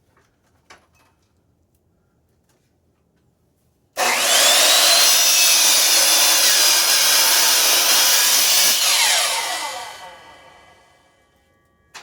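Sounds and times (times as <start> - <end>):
saw motor winding down whine: 4.0 - 10.9
miter saw cutting wood: 4.0 - 11.0.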